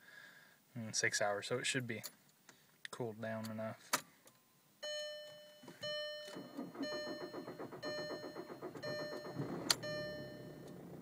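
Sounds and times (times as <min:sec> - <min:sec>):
car warning chime dinging: 0:04.8 - 0:11.0
diesel engine cranking on starter: 0:06.2 - 0:11.0.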